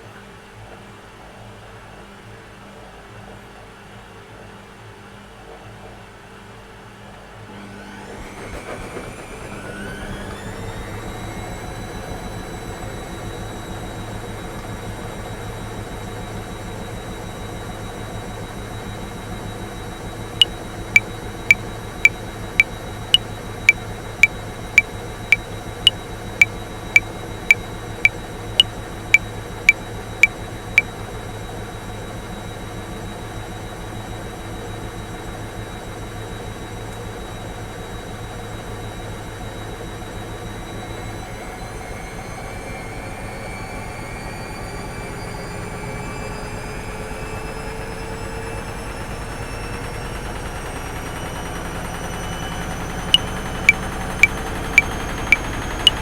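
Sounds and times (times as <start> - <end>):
washing machine motor whine: 33.1 - 56.0.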